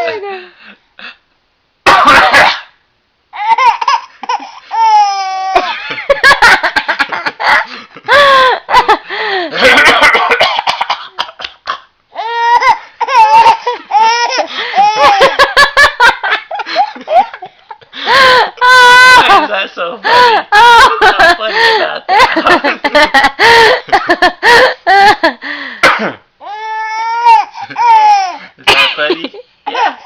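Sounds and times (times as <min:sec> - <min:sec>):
adult coughing: 0:01.9 - 0:02.8, 0:09.6 - 0:11.9, 0:25.8 - 0:26.2, 0:28.6 - 0:30.0
baby laughing: 0:03.4 - 0:09.0, 0:11.2 - 0:17.8, 0:27.2 - 0:28.4.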